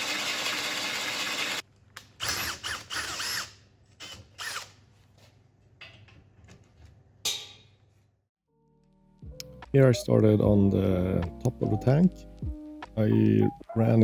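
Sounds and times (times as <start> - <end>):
power drill motor whine: 0.0 - 1.6.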